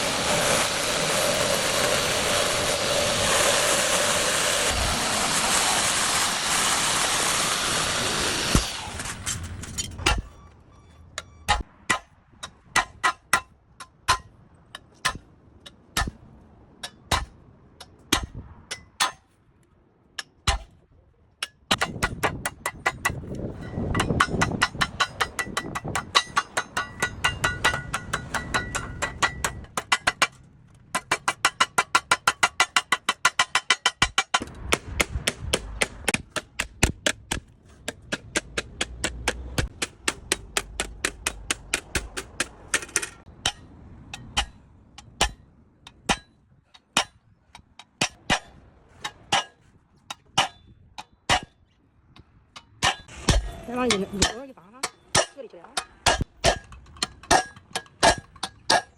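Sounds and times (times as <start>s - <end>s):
loud rushing noise: 0.0s - 9.4s.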